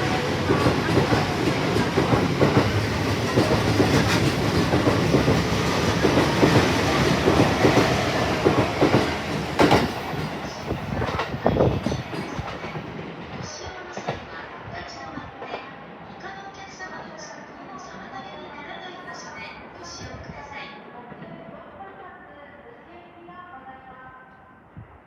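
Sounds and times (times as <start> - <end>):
train wheels clacking over rail joints: 0.0 - 10.4.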